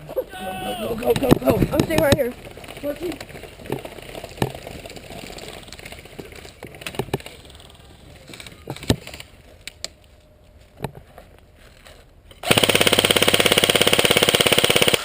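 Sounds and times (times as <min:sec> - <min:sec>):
low outdoor background: 0:00.0 - 0:15.0.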